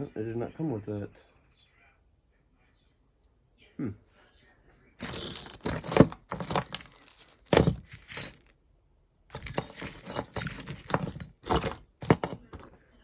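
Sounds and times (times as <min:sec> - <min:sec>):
small metal parts clinking: 0:05.0 - 0:08.5, 0:09.3 - 0:12.8.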